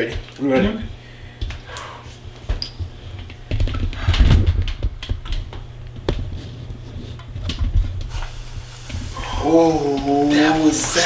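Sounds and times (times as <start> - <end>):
deep-frying oil crackling: 8.1 - 11.0.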